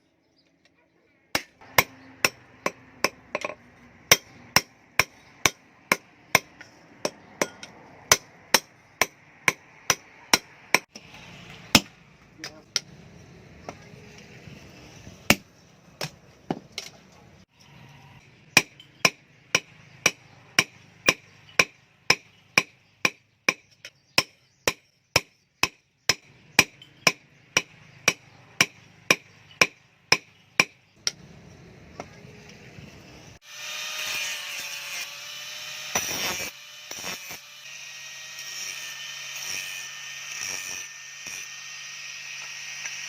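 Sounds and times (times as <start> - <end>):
power tool whirring: 33.4 - 43.0.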